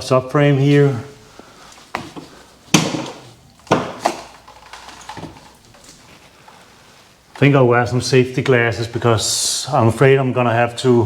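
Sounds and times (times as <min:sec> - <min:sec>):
hard parts knocking and clunking: 0:01.9 - 0:06.6.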